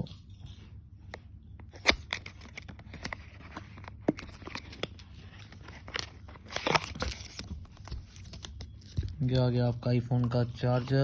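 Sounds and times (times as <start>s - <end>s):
packaging being opened by hand: 1.6s - 9.4s.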